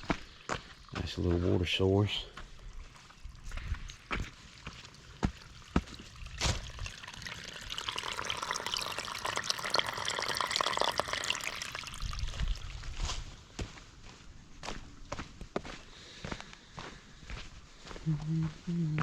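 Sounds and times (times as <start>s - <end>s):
stream trickling and splashing: 0.0s - 13.4s
footsteps: 2.2s - 6.7s, 12.2s - 19.0s.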